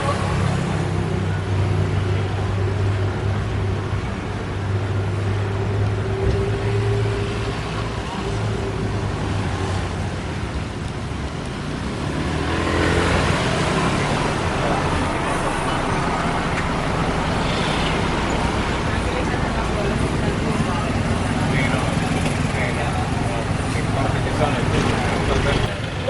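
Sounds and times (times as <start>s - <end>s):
vehicle engines humming: 0.0s - 26.0s
faint voices: 12.9s - 26.0s.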